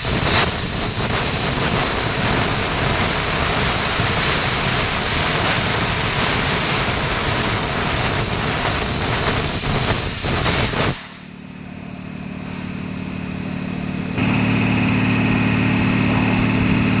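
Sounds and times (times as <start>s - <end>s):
laser cutter hissing: 0.0s - 11.4s
steady machine hum: 11.2s - 17.0s.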